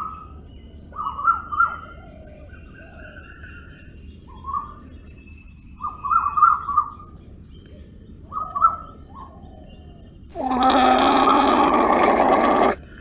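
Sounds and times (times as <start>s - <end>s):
high-pitched animal calls: 10.3s - 13.0s.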